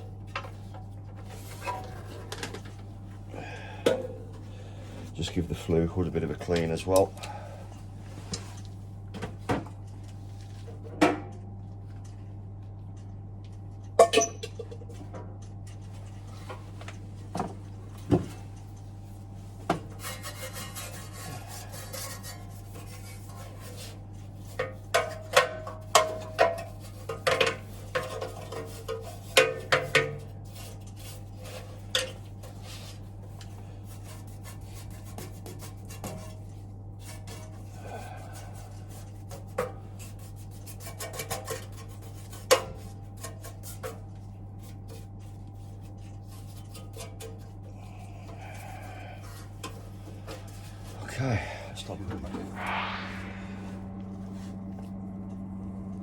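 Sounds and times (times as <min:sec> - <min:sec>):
steady low hum: 0:00.0 - 0:25.5, 0:45.2 - 0:56.0
scrubbing on sheet metal: 0:19.9 - 0:25.1.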